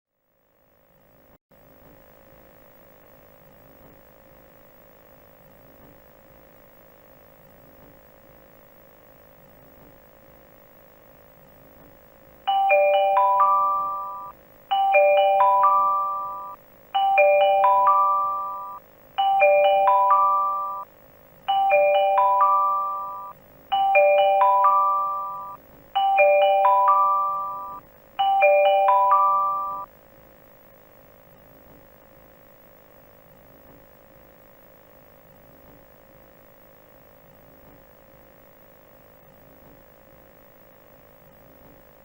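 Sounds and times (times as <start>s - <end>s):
bell-like mallet chime: 12.5s - 20.9s, 21.5s - 29.9s.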